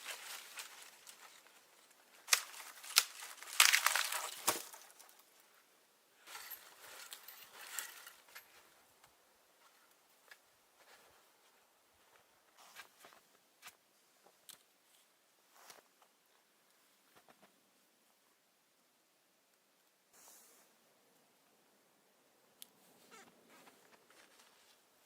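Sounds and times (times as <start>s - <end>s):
crinkling rustling handling noise: 0.0s - 5.6s, 6.3s - 8.8s.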